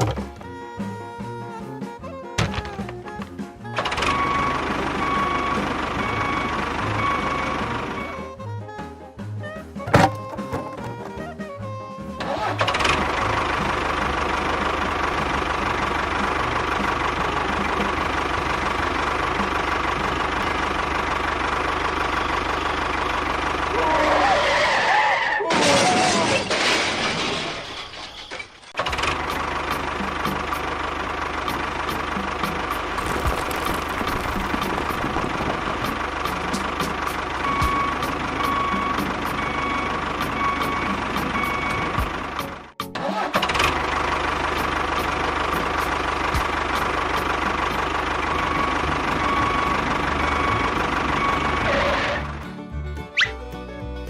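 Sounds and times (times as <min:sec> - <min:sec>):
small engine running: 0:12.2 - 0:24.7, 0:28.8 - 0:52.4.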